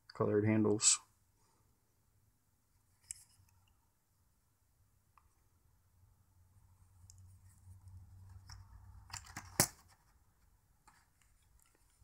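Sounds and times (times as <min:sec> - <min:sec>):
rustling: 0:07.2 - 0:12.0.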